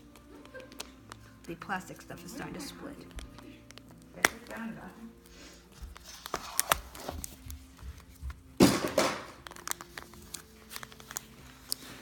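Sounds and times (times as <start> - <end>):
faint music: 0.0 - 12.0
plastic shell cracking: 3.0 - 4.8, 5.9 - 7.5, 8.6 - 11.9.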